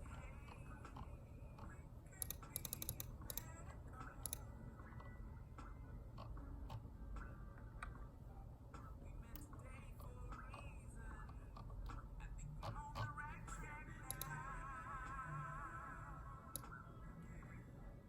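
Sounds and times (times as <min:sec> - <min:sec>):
mechanical keyboard typing: 0:00.0 - 0:04.5, 0:14.0 - 0:14.4.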